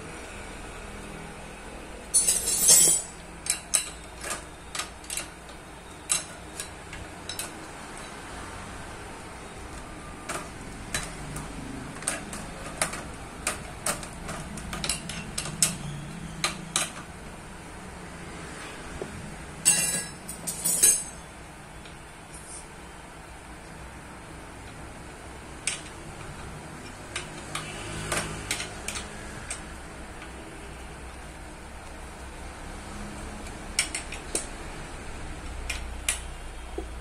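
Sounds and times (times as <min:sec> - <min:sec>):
small metal clicks and clinks: 0:02.1 - 0:08.3, 0:19.6 - 0:21.2.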